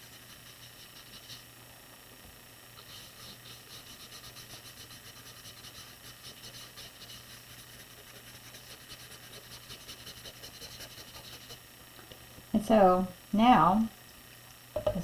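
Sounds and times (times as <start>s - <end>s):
paintbrush scrubbing on paper: 0.0s - 1.4s, 2.8s - 11.6s.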